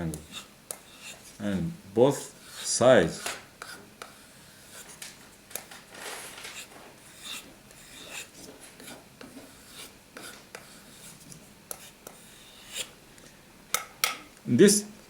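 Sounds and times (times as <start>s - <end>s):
knife scraping on sharpener: 0.1s - 1.4s, 2.4s - 5.0s, 6.5s - 13.0s.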